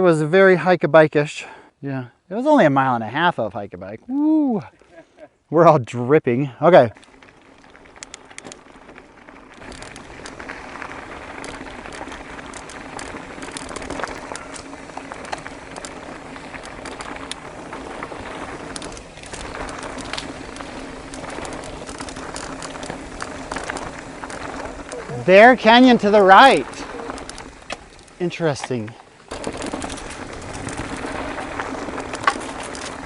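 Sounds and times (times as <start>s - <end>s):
bike clicks and rattles: 6.9s - 33.0s
tyre and wind rush: 8.6s - 33.0s.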